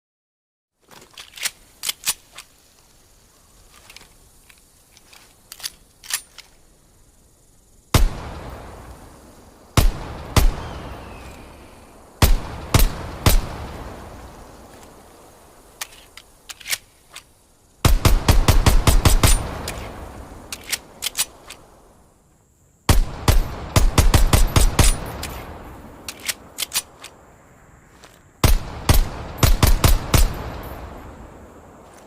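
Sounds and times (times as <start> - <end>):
sharp gun clicks: 1.2 - 2.5, 15.8 - 17.3, 20.5 - 21.7, 26.0 - 27.2.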